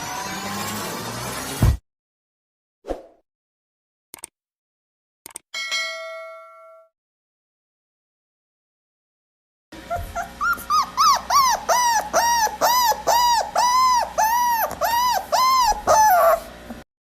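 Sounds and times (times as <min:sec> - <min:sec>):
puppy whining: 0:09.8 - 0:16.6.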